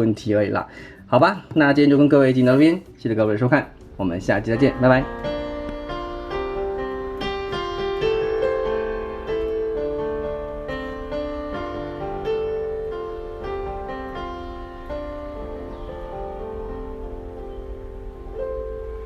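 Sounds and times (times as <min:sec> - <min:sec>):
slow piano melody: 0:01.0 - 0:19.0.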